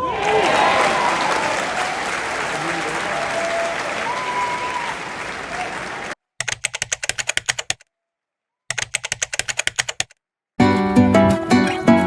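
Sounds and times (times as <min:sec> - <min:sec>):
crowd applause: 0:00.0 - 0:06.2
keyboard typing clicks: 0:06.4 - 0:07.8, 0:08.7 - 0:10.2
music: 0:10.6 - 0:12.0.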